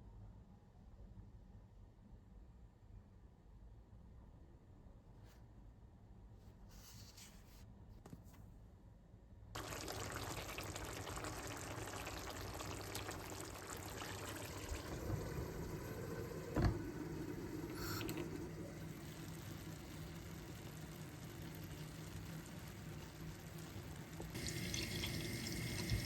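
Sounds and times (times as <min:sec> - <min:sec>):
water pouring: 0:09.6 - 0:26.0.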